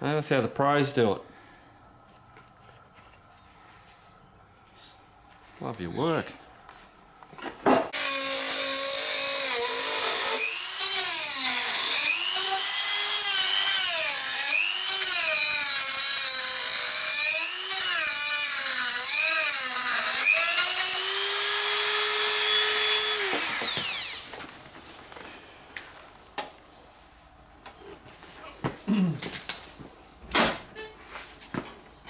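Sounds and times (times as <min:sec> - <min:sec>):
high-speed power tool running: 0:08.0 - 0:24.3.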